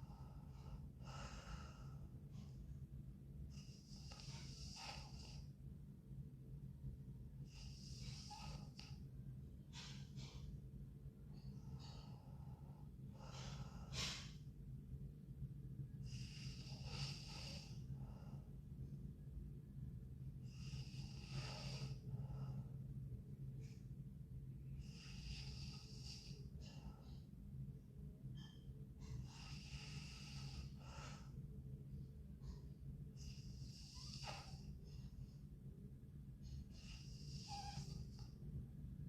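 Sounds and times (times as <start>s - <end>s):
girl breathing with light snoring: 0.0s - 2.7s, 3.4s - 5.7s, 7.4s - 10.5s, 11.3s - 14.5s, 15.9s - 18.7s, 20.3s - 23.0s, 24.7s - 27.3s, 28.3s - 31.5s, 32.4s - 35.4s, 36.3s - 38.4s
steady low hum: 0.0s - 39.0s.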